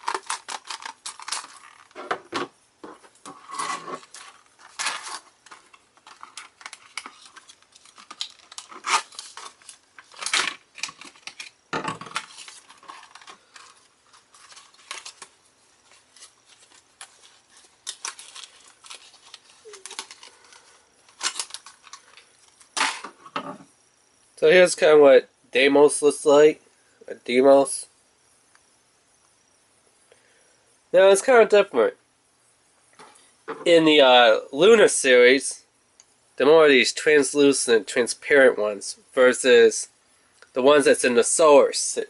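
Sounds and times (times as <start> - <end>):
packaging being cut and torn: 0.0 - 1.9, 3.6 - 5.3, 6.2 - 11.5.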